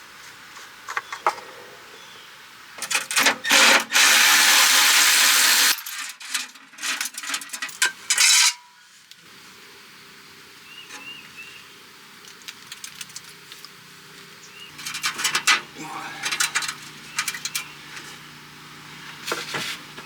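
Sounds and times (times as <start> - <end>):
metal tools clinking and scraping: 2.8 - 3.9, 5.5 - 8.8, 14.7 - 18.2.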